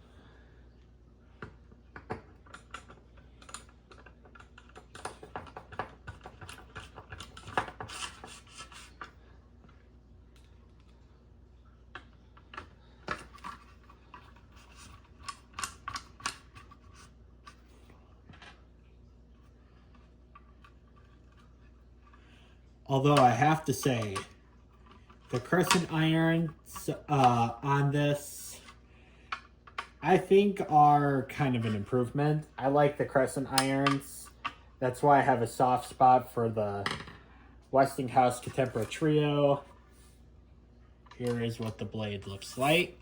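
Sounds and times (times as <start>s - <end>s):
clicks taps and scrapes of metal parts: 1.4s - 9.8s, 12.0s - 18.6s, 23.1s - 27.5s, 28.6s - 30.0s, 33.5s - 34.6s.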